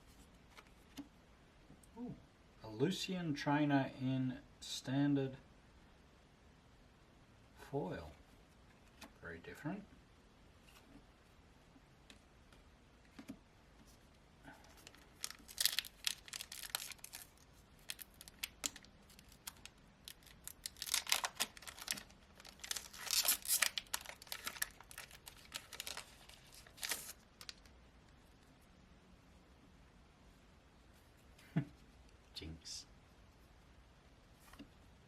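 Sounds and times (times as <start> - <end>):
foil wrapper tearing and crinkling: 14.8 - 27.6.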